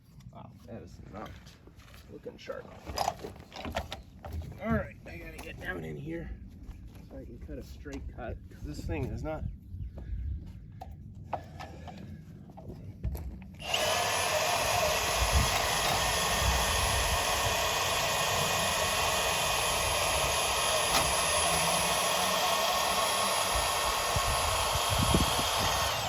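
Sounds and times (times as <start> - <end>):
band saw cutting plastic pipe: 13.6 - 26.0.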